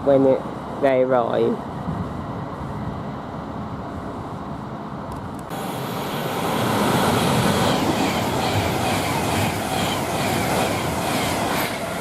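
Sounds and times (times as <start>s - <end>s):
electric train rushing past: 1.6s - 12.0s
train wheels clicking over track: 5.1s - 12.0s.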